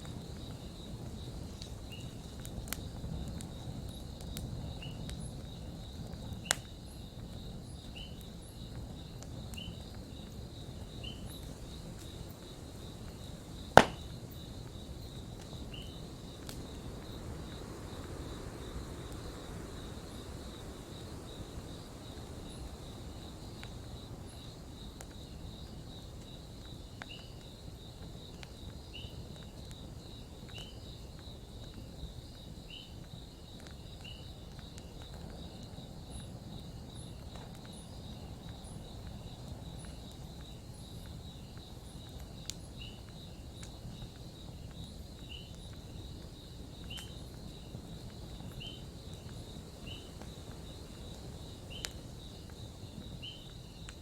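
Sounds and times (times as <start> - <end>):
sharp fire pops: 0.0 - 17.7, 37.0 - 54.0
campfire rumbling and crackling: 0.0 - 54.0
crickets chirping: 0.0 - 54.0.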